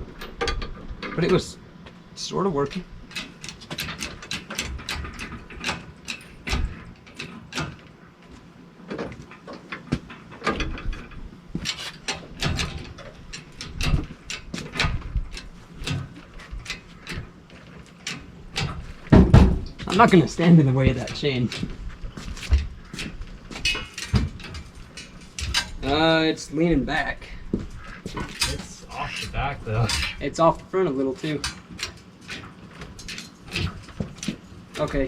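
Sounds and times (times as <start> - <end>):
metallic chain clicks and clanks: 2.7 - 7.8, 10.4 - 19.2, 22.3 - 26.2, 28.1 - 30.6, 31.2 - 35.0.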